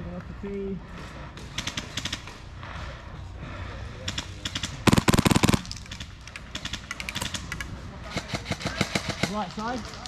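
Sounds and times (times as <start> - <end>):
distant airsoft fire: 4.4 - 7.3
airsoft gun full-auto burst: 4.8 - 5.8.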